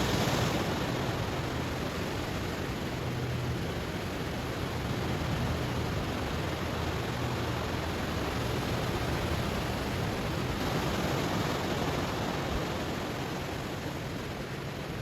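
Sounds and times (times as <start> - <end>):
surf washing over stones: 0.0 - 3.6.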